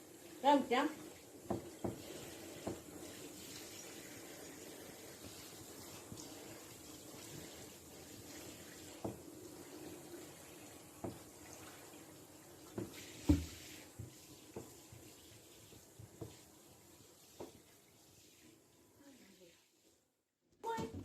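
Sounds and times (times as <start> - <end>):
shower water running: 0.0 - 20.2
soft knocks: 1.5 - 2.9, 12.8 - 14.8.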